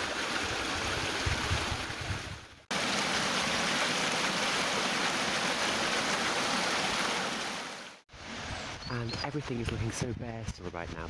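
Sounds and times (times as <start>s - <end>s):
stream water rushing: 0.0s - 8.7s.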